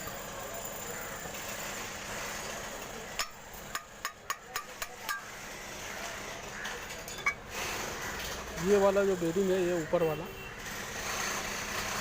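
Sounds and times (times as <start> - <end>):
steady background noise: 0.0 - 12.0
sharp metallic knocks: 3.2 - 5.3.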